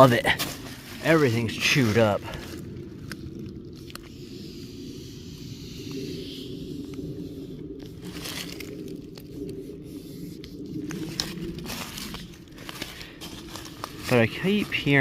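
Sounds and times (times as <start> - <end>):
hands crinkling plastic tubing: 10.4 - 15.0.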